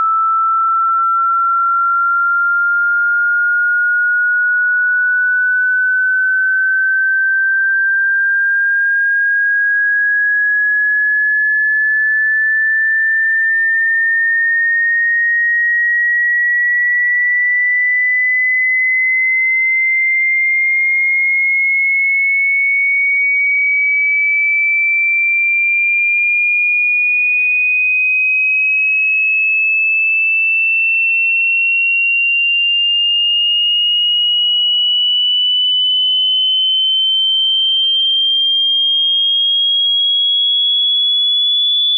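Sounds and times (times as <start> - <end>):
electronic test tone rising in pitch: 0.0 - 14.0, 33.4 - 41.9.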